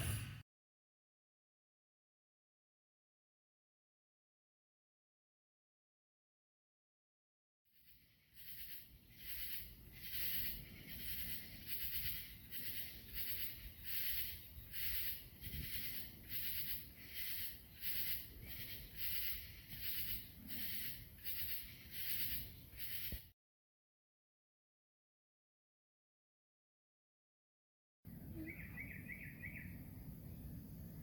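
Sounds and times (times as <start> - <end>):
insects calling in raspy pulses: 8.0 - 23.2.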